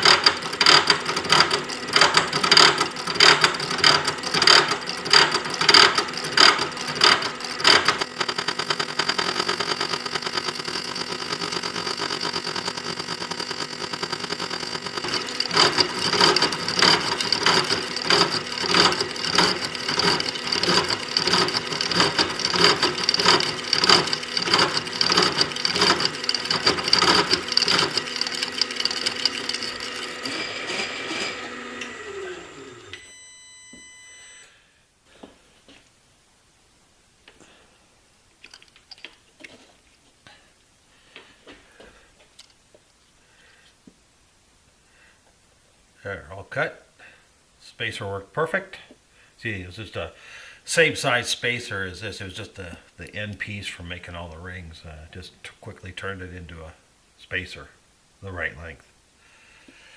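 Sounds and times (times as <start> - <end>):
fast rattle of cutting: 0.0 - 30.8
machine spindle running tone: 0.0 - 34.4
machine winding down: 0.0 - 34.4.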